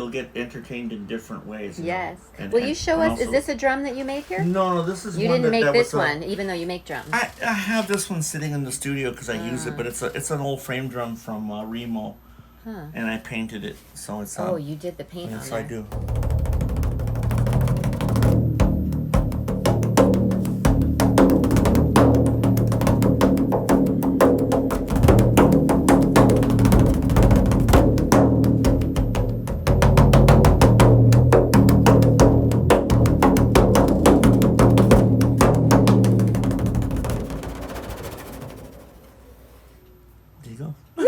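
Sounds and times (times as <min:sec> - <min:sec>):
frame drum roll: 0:15.6 - 0:39.8.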